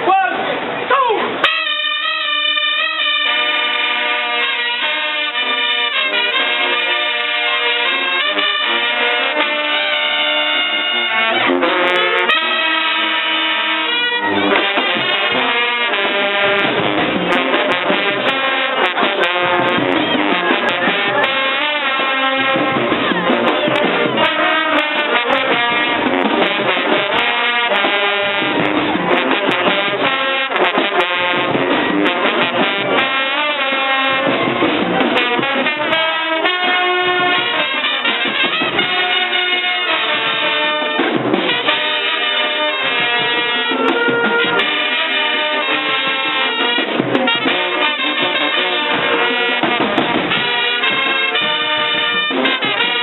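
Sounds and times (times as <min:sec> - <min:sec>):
drums: 0:00.0 - 0:53.0
trumpets and trombones: 0:00.0 - 0:53.0.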